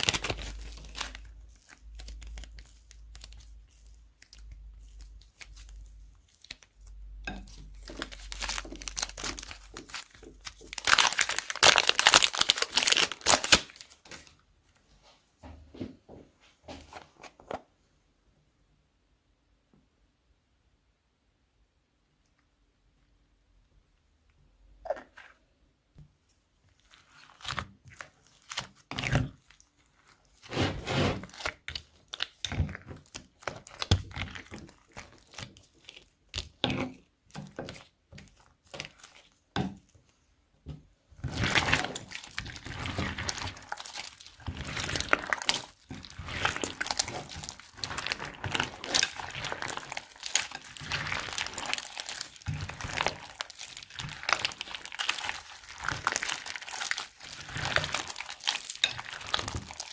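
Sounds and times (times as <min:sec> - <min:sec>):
plastic bags crinkling: 0:00.0 - 0:14.3, 0:41.2 - 0:59.9
slime squishing: 0:00.0 - 0:14.4, 0:26.6 - 0:59.9.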